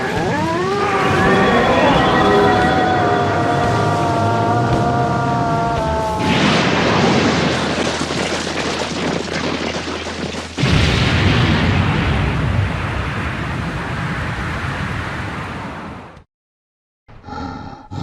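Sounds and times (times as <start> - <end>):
explosion-like boom: 5.8 - 8.3, 10.6 - 14.2.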